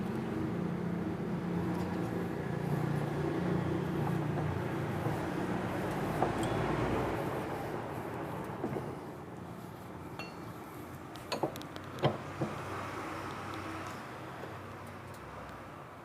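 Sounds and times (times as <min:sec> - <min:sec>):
metal tools clinking: 0:06.4 - 0:06.7.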